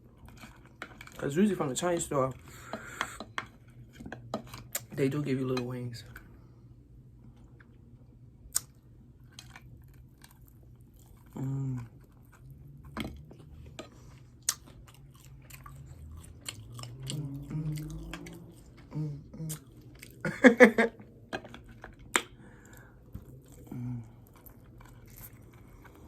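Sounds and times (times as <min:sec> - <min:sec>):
wet mouth clicks and smacks: 0:08.5 - 0:08.8, 0:14.4 - 0:14.7
person chewing chicken wings: 0:08.5 - 0:26.0
person humming: 0:17.0 - 0:19.7.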